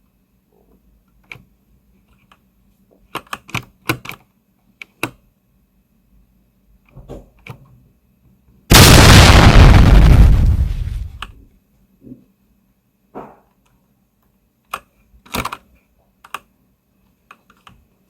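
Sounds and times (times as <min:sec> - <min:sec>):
loud explosion sound effect: 0:08.7 - 0:11.3.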